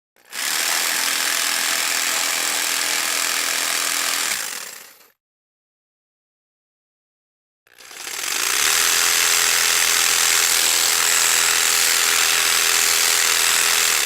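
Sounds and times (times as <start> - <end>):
power tool whining: 7.7 - 14.0.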